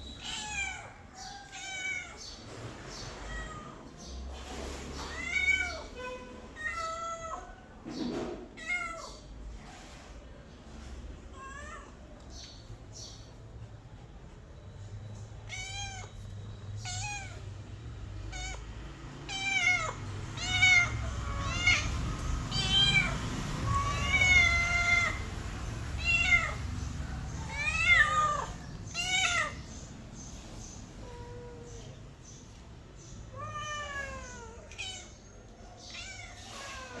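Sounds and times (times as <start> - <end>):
cat meowing: 0.1 - 2.3, 3.2 - 3.9, 5.0 - 7.6, 15.4 - 17.5, 18.1 - 29.9, 30.9 - 32.0, 33.2 - 37.0.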